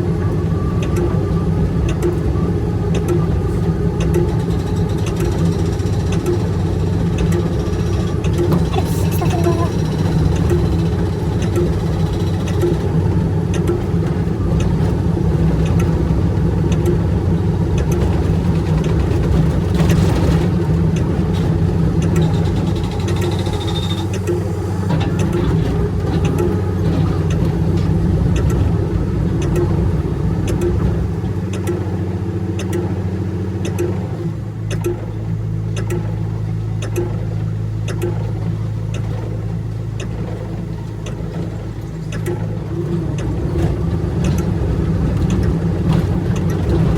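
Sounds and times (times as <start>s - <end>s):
excavator diesel engine running: 0.0s - 46.9s
sharp clicks: 32.6s - 32.9s, 33.6s - 34.0s, 34.7s - 35.0s.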